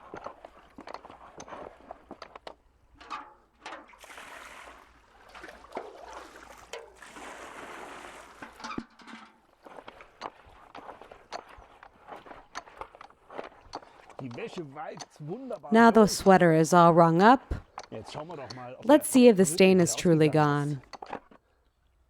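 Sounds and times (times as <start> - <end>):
water sloshing: 3.8 - 8.6.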